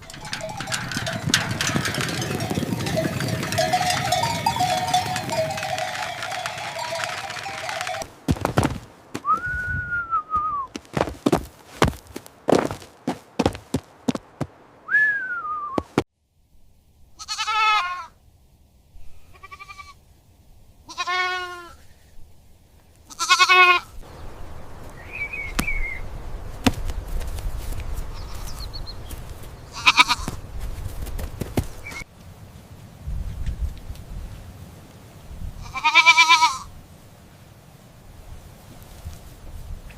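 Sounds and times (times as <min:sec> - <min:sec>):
young livestock bleating: 0:17.2 - 0:18.1, 0:19.2 - 0:20.0, 0:20.9 - 0:21.8, 0:23.1 - 0:23.9, 0:29.7 - 0:30.4, 0:35.6 - 0:36.7.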